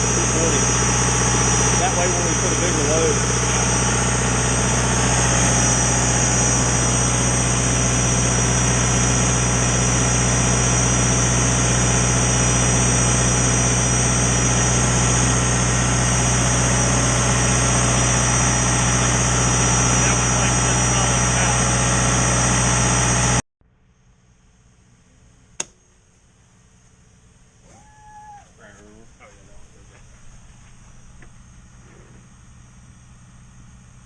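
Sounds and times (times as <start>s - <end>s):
diesel generator running: 0.0s - 23.4s, 24.1s - 34.0s
high-pitched whine: 0.0s - 24.1s.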